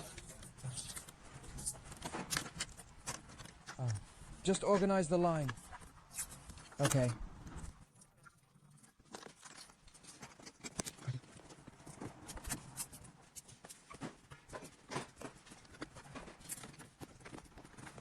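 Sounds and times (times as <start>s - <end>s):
hands handling wiring and trim: 0.0s - 18.0s.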